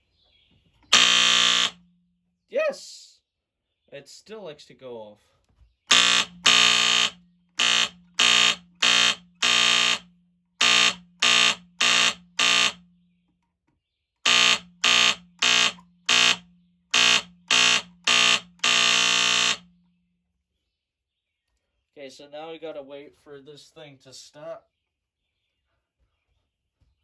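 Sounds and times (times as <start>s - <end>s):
smoke alarm horn blasts: 0.9s - 1.8s, 5.9s - 12.9s, 14.2s - 19.7s.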